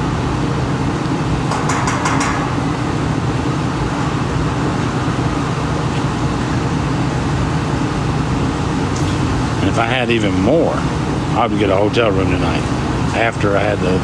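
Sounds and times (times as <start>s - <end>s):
faint hum: 0.0s - 14.0s
low rumbling background noise: 0.0s - 14.0s.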